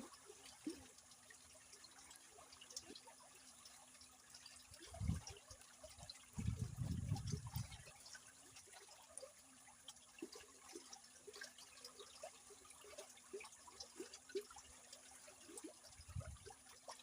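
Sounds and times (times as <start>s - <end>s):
drips and bubbles: 0.0s - 17.0s
trickling gurgling water: 0.0s - 17.0s.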